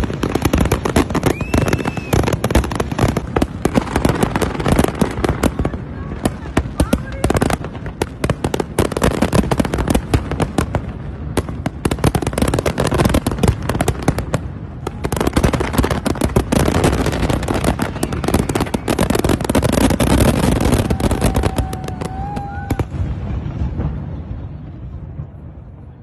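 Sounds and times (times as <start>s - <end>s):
fireworks crackling and popping: 0.0s - 26.0s.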